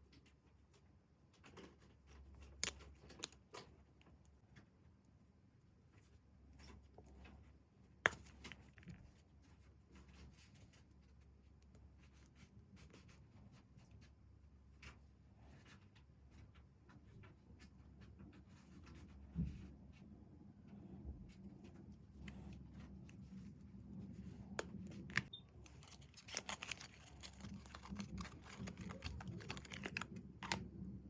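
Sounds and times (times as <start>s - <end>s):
packaging rustling: 24.6s - 30.7s.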